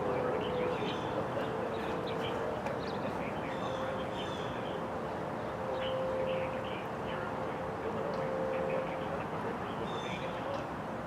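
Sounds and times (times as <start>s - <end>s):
distant warning sirens: 0.0s - 11.0s
songbirds chirping and trilling: 0.0s - 11.0s.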